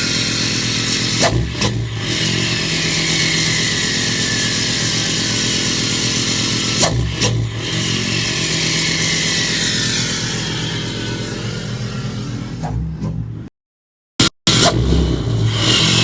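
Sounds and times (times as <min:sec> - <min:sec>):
diesel engine running: 0:00.0 - 0:13.5, 0:14.2 - 0:16.0
turbo whine: 0:00.0 - 0:13.5, 0:14.2 - 0:16.0.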